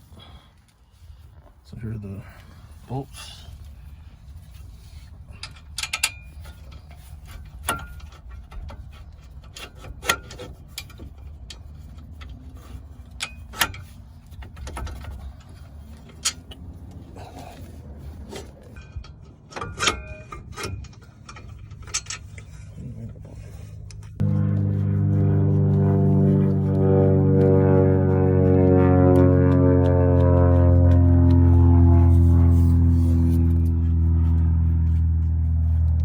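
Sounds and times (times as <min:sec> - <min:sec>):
steady low hum: 0:00.0 - 0:36.0
metal bolts and tools clinking: 0:18.3 - 0:22.7.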